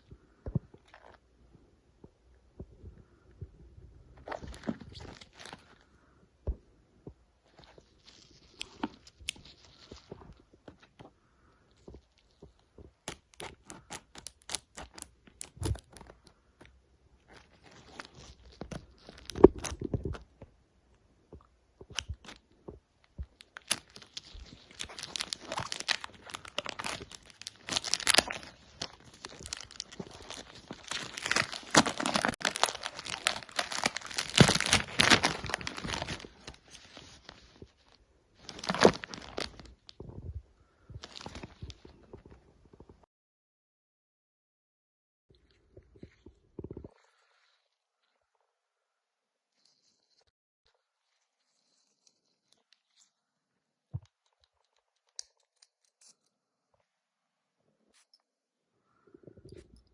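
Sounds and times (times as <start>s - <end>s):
wrapping tearing and crinkling: 4.2s - 5.8s, 7.5s - 10.3s, 13.0s - 16.3s, 17.3s - 20.2s, 23.4s - 39.9s, 41.0s - 41.9s.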